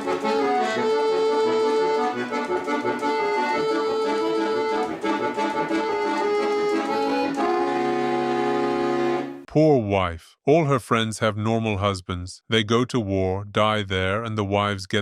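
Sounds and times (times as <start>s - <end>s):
instrumental music: 0.0s - 9.5s.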